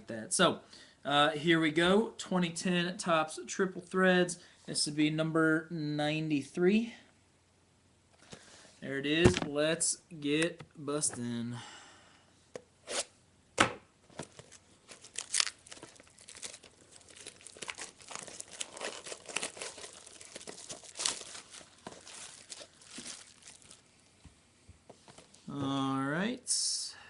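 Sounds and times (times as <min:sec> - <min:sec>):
plastic shrink wrap crinkling: 0:14.2 - 0:23.9.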